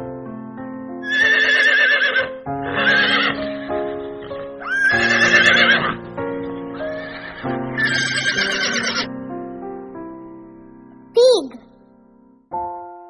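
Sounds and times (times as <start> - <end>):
background music with held notes: 0.0 - 13.0
horse whinnying: 1.0 - 3.4, 4.6 - 6.0, 7.1 - 9.1.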